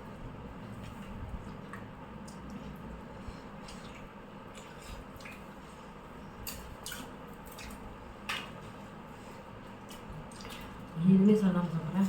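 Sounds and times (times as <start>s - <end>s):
low steady background noise: 0.0s - 12.0s
wet eating smacks and clicks: 0.8s - 5.8s, 6.4s - 11.0s.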